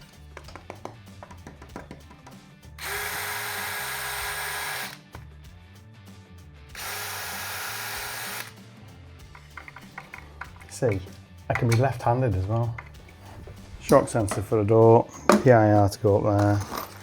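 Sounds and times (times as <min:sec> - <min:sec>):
power drill running: 0:02.8 - 0:05.0, 0:06.7 - 0:08.6.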